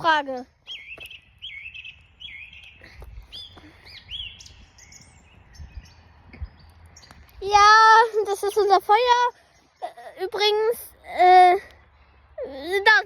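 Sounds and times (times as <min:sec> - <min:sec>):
small songbird chirping: 0:00.0 - 0:07.6, 0:08.2 - 0:10.2.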